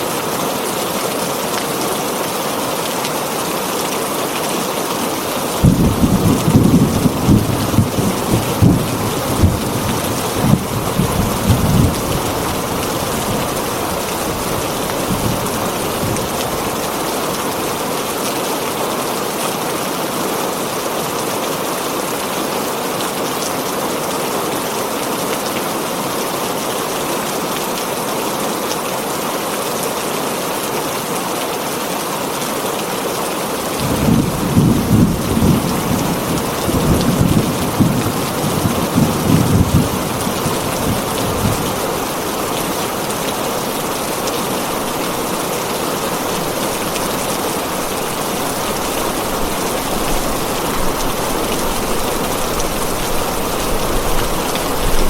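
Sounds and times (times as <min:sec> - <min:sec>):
heavy rain on a tin roof: 0:00.0 - 0:55.0
low thunder rumbling: 0:05.6 - 0:16.9, 0:33.8 - 0:42.8, 0:46.0 - 0:55.0.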